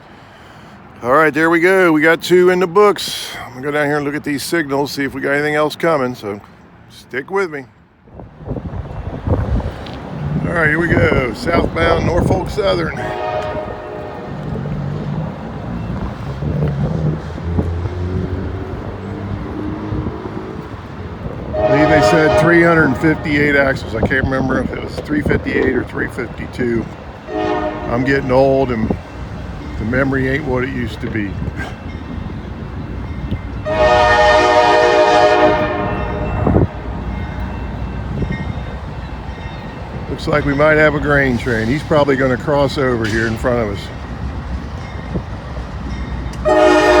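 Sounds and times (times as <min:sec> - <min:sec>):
diesel freight locomotive rumble: 0:00.0 - 0:47.0
wind noise on microphone: 0:08.1 - 0:40.6, 0:44.0 - 0:47.0
locomotive air horn: 0:12.9 - 0:14.6, 0:21.5 - 0:23.9, 0:27.3 - 0:28.4, 0:33.6 - 0:37.2, 0:46.4 - 0:47.0.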